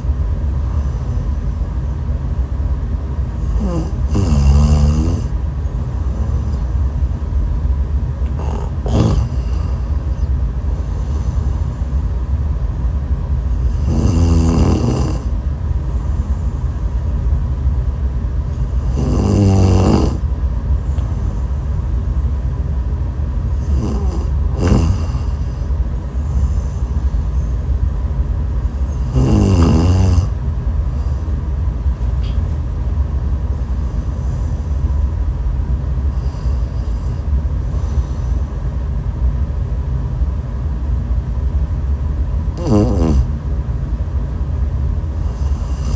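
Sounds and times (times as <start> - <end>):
steady low rumble: 0.0 - 45.9
woman snoring: 3.4 - 5.4, 8.2 - 10.1, 13.6 - 15.4, 18.6 - 20.2, 23.5 - 25.7, 28.8 - 30.4, 42.5 - 43.3, 45.2 - 45.9.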